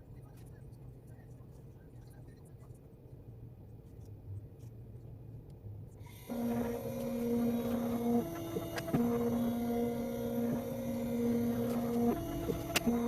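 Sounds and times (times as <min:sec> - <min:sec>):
electric motor whine: 0:06.0 - 0:13.0.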